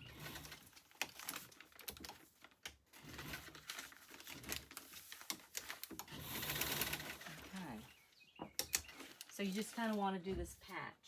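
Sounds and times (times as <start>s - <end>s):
thin paper crinkling: 0.5s - 6.0s, 8.9s - 10.8s.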